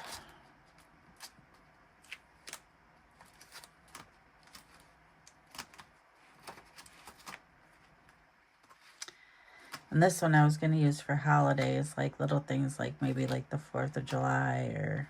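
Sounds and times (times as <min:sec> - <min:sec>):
paper rustling and clicking: 0:00.0 - 0:09.9.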